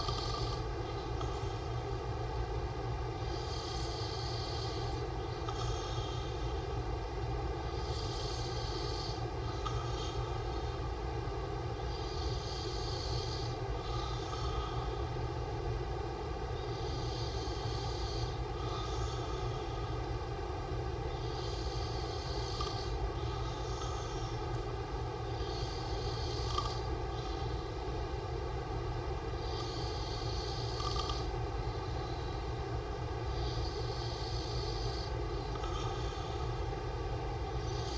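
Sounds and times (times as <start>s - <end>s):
man snoring: 0.0s - 1.8s, 3.2s - 6.7s, 7.6s - 10.9s, 11.8s - 15.1s, 16.6s - 20.0s, 21.1s - 27.8s, 29.4s - 31.3s, 33.3s - 36.7s, 37.6s - 37.9s.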